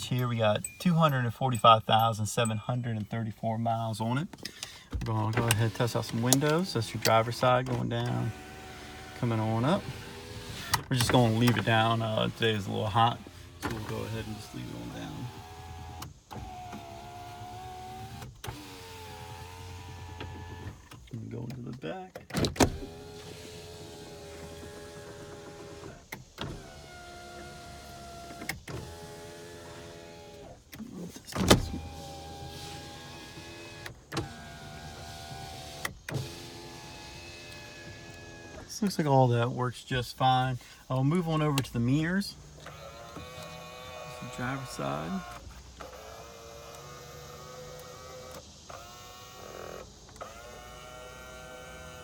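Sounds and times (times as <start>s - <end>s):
power window motor running: 5.0s - 21.6s, 22.5s - 38.8s, 41.0s - 52.0s.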